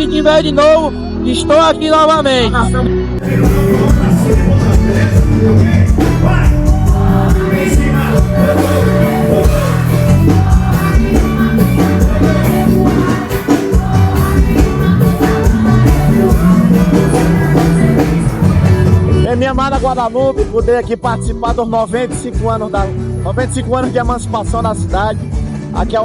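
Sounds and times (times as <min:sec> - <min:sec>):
band music with singer: 0:00.0 - 0:26.0
heavy bass beat: 0:03.2 - 0:20.8.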